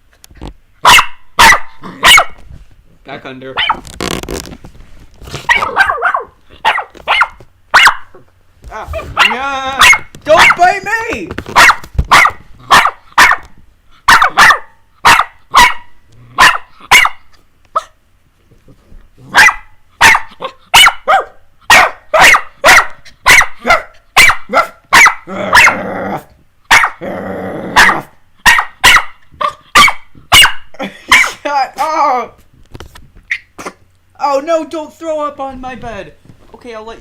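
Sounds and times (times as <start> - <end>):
puppy growling in play: 1.8 - 2.1, 16.1 - 16.9, 25.2 - 26.4, 27.0 - 28.2
puppies yapping: 5.5 - 8.1.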